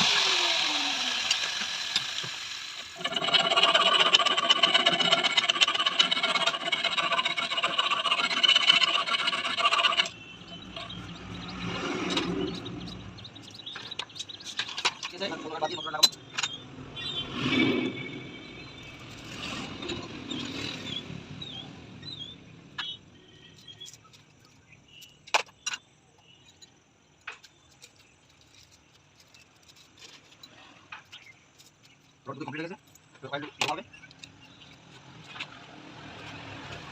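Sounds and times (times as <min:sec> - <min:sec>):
rasping and scraping on metal: 0:03.0 - 0:15.4, 0:18.7 - 0:21.0
metal tools clinking: 0:23.6 - 0:35.5.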